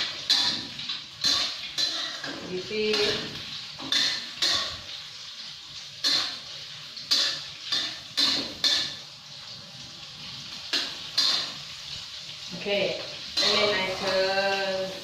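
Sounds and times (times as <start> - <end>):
utensil scraping a wok: 0.0 - 9.2, 10.2 - 15.0
egg sizzling in oil: 0.0 - 15.0.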